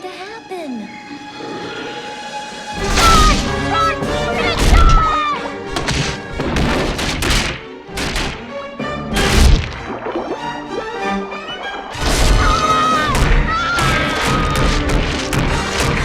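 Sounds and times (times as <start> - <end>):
dramatic orchestral film music: 0.0 - 16.0
loud crashes and thuds: 2.8 - 8.5, 9.1 - 10.0, 11.9 - 16.0.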